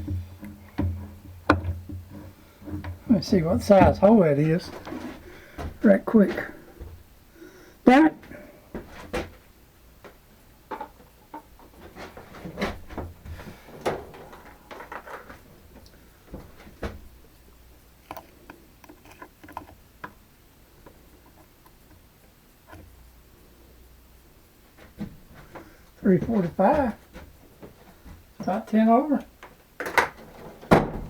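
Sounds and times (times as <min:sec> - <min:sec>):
small tools clicking and knocking: 0:10.7 - 0:17.0, 0:17.9 - 0:22.1.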